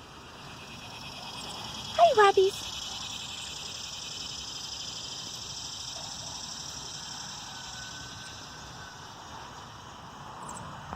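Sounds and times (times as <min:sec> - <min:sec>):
outdoor high hiss: 0:00.0 - 0:10.9.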